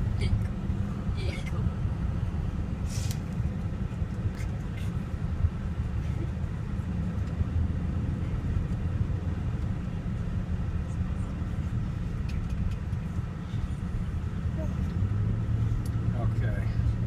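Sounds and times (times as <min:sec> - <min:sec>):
vehicle noise rumble: 0:00.0 - 0:17.0.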